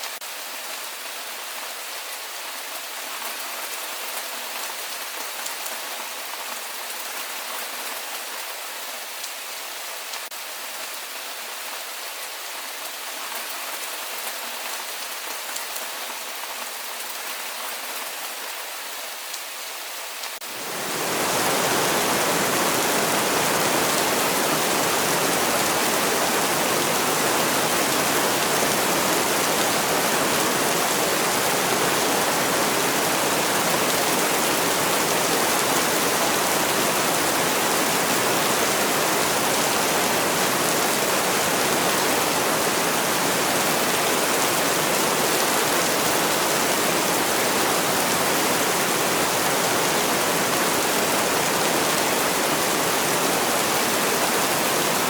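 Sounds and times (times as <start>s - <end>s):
rain falling: 19.1s - 55.0s.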